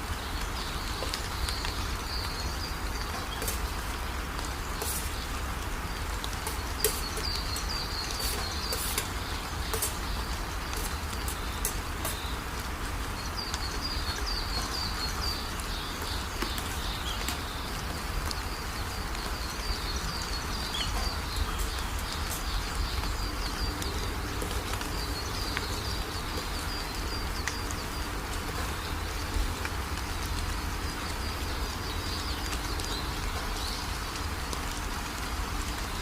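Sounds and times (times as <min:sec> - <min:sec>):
birds chirping: 0:00.0 - 0:36.0
steady background hiss: 0:00.0 - 0:36.0.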